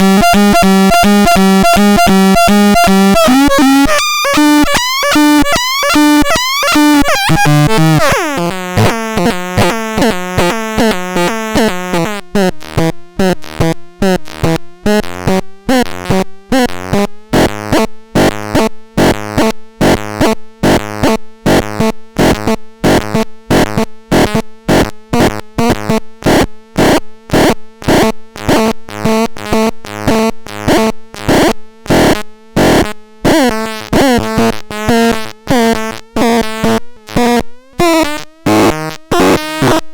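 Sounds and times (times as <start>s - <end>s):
repeating synthesizer notes: 0.0s - 12.1s
synthesizer pitch sweep: 0.0s - 12.1s.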